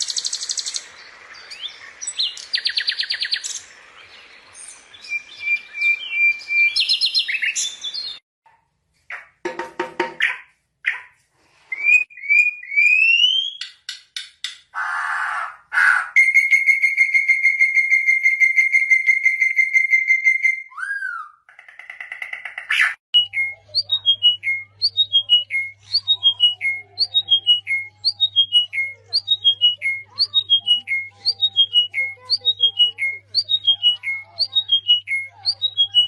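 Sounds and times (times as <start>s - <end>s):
bird whistling: 4.9s - 8.2s, 14.8s - 21.4s, 23.2s - 36.0s.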